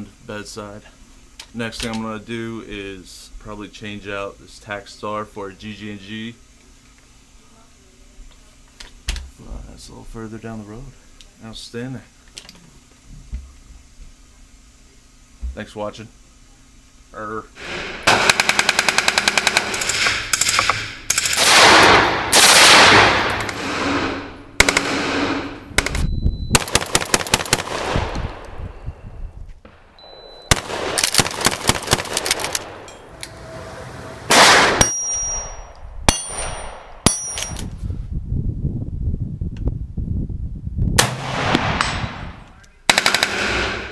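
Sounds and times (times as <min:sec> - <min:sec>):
gunfire bursts: 0:17.6 - 0:28.4, 0:30.5 - 0:32.9, 0:34.3 - 0:35.0, 0:41.0 - 0:43.9.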